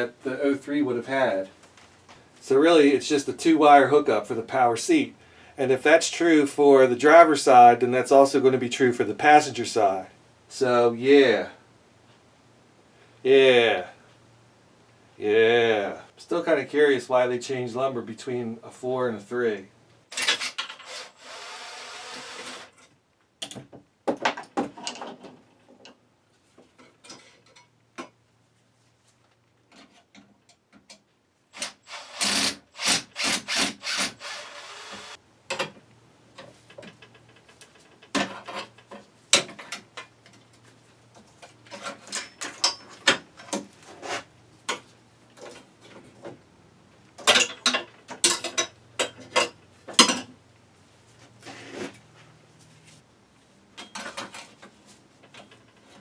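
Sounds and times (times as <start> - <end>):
hand tools clicking and knocking on metal: 41.2 - 43.7, 47.2 - 50.3, 53.8 - 56.0.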